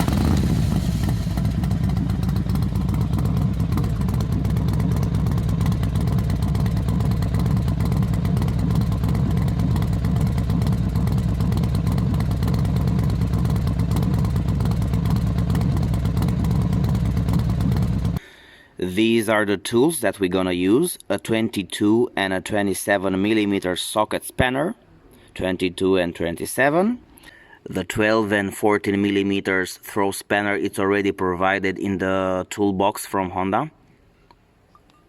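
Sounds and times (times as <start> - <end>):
motorcycle engine idling: 0.0 - 18.2.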